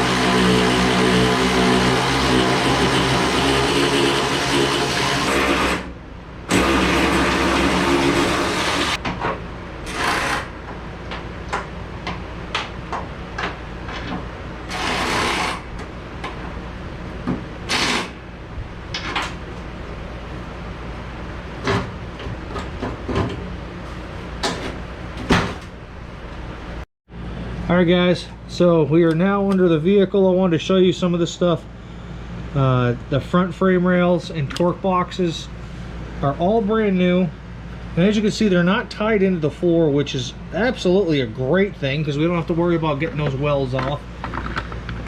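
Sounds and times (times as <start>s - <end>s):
small motor running: 0.0s - 5.9s.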